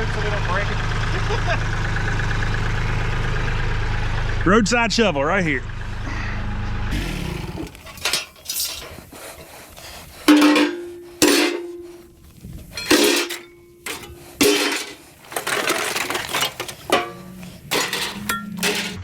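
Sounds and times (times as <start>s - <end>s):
engine idling: 0.0s - 19.0s
scrap metal clanking onto pile: 7.6s - 19.0s.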